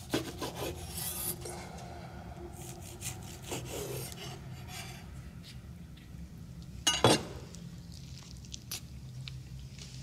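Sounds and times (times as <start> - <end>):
knife sawing through bread: 0.0 - 1.4, 2.6 - 5.0.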